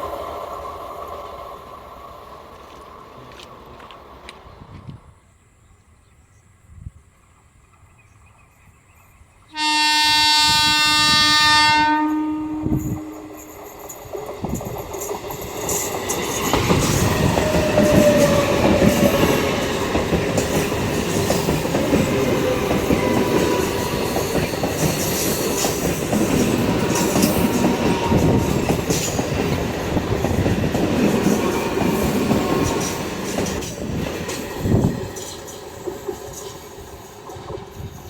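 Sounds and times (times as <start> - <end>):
train wheels clattering on rails: 12.6 - 38.0.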